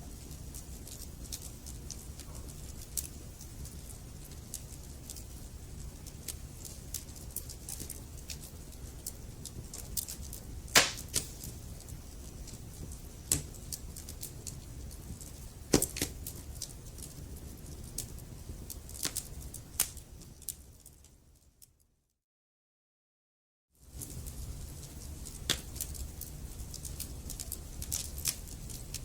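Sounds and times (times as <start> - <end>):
low rumble of fire: 0.0 - 21.7, 23.8 - 29.0
wood fire crackling: 0.0 - 21.7, 23.8 - 29.0
sharp pops and snaps: 6.0 - 17.2, 18.7 - 21.0, 24.8 - 29.0.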